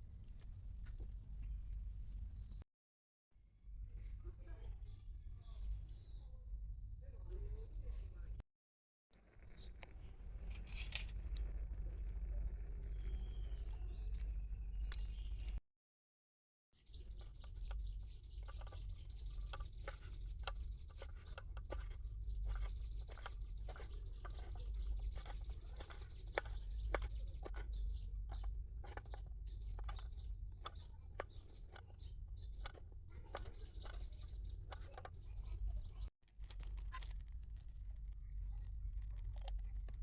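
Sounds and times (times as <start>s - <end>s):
small birds chirping: 1.4s - 2.6s, 4.8s - 6.4s, 9.5s - 15.6s, 16.8s - 40.0s
steady low rumble: 9.3s - 15.6s, 35.4s - 40.0s.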